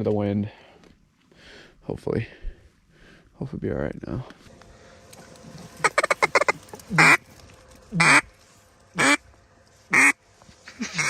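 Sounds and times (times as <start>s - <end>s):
duck quacking: 5.8s - 7.2s, 8.0s - 8.2s, 9.0s - 9.2s, 9.9s - 10.2s.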